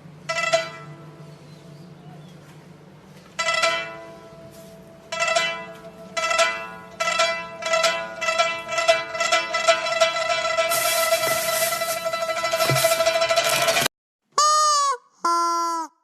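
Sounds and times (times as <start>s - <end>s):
plucked string music: 3.4s - 13.9s.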